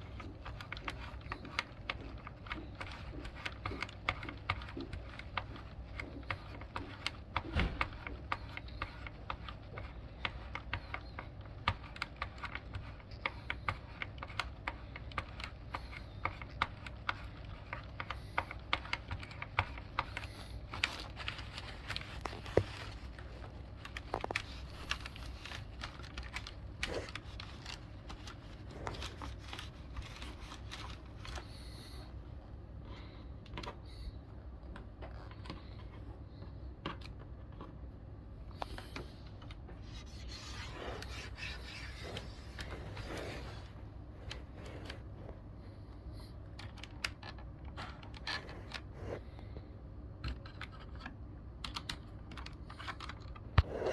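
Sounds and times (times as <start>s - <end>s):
mechanical keyboard keys clicking: 50.2s - 53.4s.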